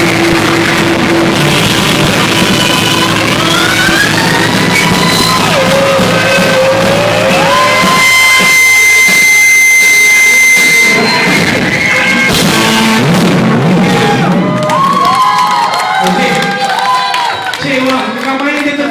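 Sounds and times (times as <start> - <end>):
sliding high notes: 0.0 - 14.5
live rock band playing: 0.0 - 15.4.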